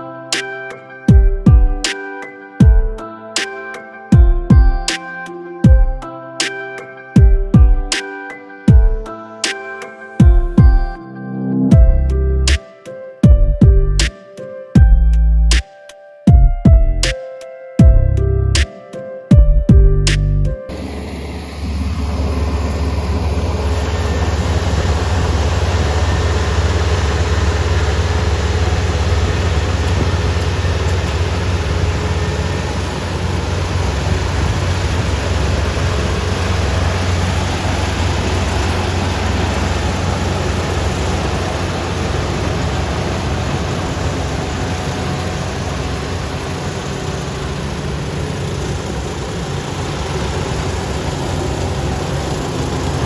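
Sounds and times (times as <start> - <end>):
diesel engine droning: 20.7 - 53.0.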